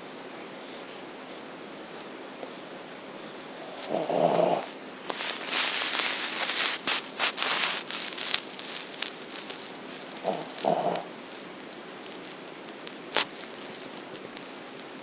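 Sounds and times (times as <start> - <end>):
breathy hissing snorts: 3.5 - 5.9, 10.1 - 11.2
pet snoring: 3.6 - 4.8, 10.2 - 11.1.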